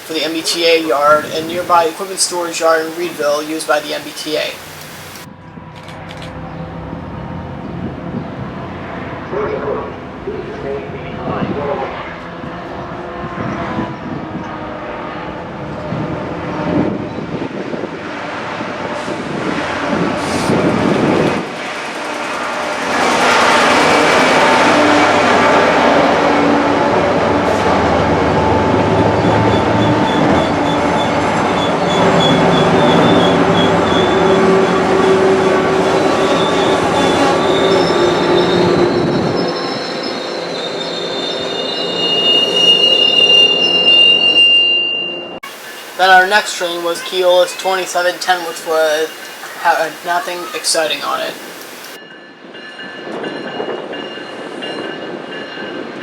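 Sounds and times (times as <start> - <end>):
train running past on tracks: 0.0 - 56.0
train wheels squealing: 28.9 - 45.9.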